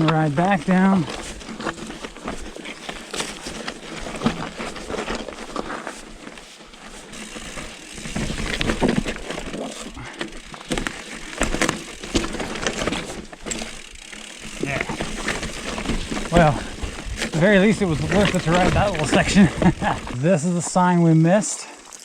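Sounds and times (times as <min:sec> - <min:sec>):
bike tyres rolling over rocks: 0:00.0 - 0:22.0
chain and frame rattling: 0:00.4 - 0:20.2.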